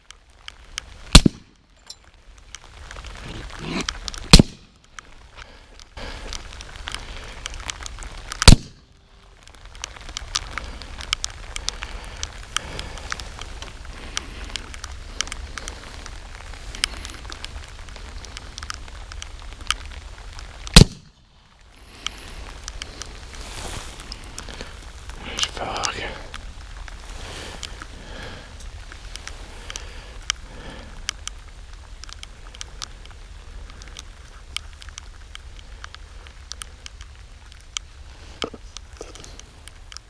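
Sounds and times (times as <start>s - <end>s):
crackling with small clicks: 0.0s - 40.0s
suppressed pistol shots: 1.1s - 1.5s, 4.3s - 4.7s, 8.4s - 8.8s, 20.8s - 21.2s.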